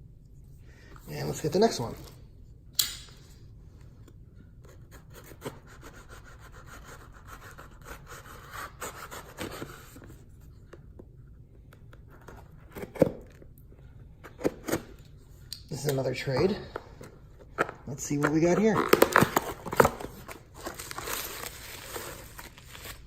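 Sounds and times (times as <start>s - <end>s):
hands rubbing and rustling package: 15.7s - 23.0s.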